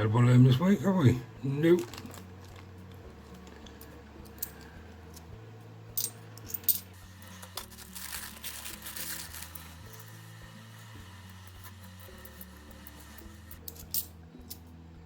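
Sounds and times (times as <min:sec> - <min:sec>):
coins clinking: 0:06.0 - 0:14.6.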